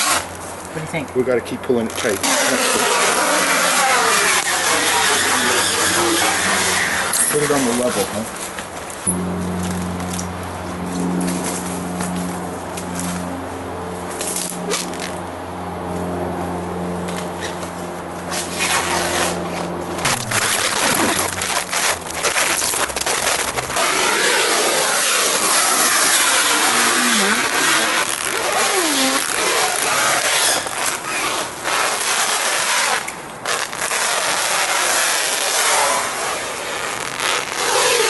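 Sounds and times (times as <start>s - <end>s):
stretch wrap crackling: 0.0s - 0.8s, 1.9s - 13.3s, 18.3s - 38.0s
plastic wrap squeaks: 1.9s - 8.2s, 20.0s - 38.0s.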